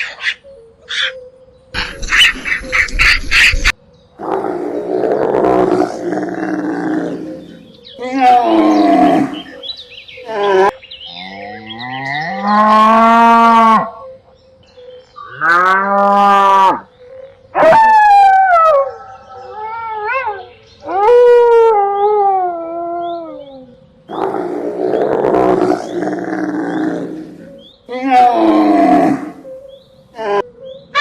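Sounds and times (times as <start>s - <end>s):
long pitched animal calls: 17.5s - 31.0s.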